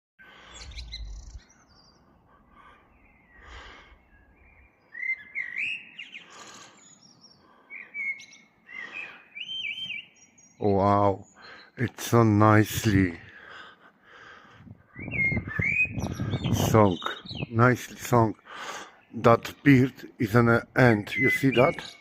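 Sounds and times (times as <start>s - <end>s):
songbirds singing: 0.2s - 22.0s.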